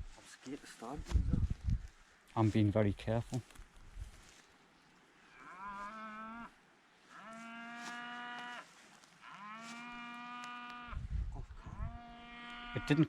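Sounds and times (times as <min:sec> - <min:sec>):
cattle mooing: 0:11.7 - 0:13.0.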